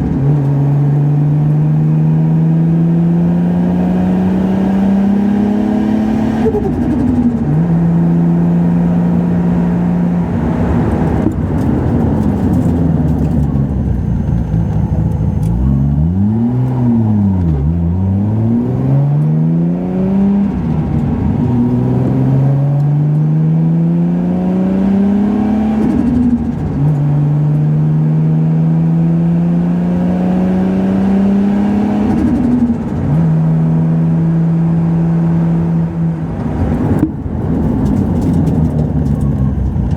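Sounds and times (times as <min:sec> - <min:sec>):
turbo car engine accelerating: 0:00.0 - 0:39.9.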